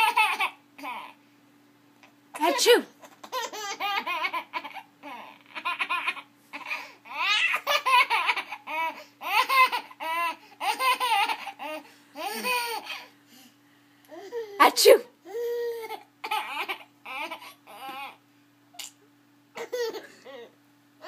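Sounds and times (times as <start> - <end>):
young child laughing: 2.4 - 13.0, 19.6 - 20.5
child sneezing: 14.6 - 15.1.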